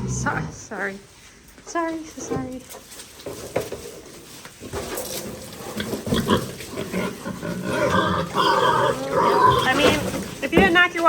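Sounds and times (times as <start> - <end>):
pigs calling: 5.4 - 10.4.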